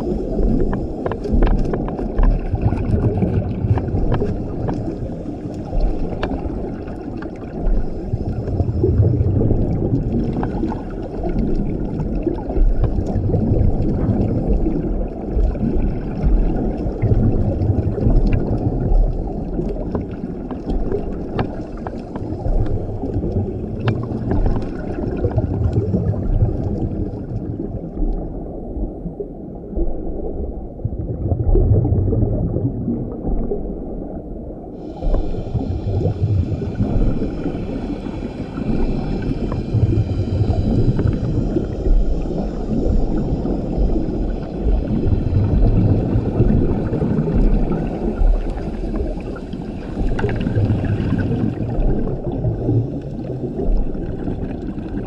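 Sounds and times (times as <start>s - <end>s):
underwater bubbles gurgling: 0.0s - 55.0s
faint clicks: 3.3s - 7.4s.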